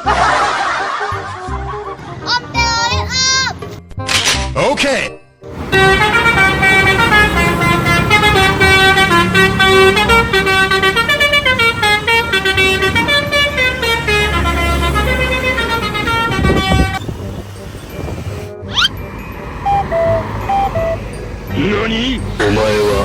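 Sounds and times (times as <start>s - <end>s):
multi-tone musical bus horn: 5.5s - 23.0s
vehicle engine low rumble: 5.5s - 23.0s.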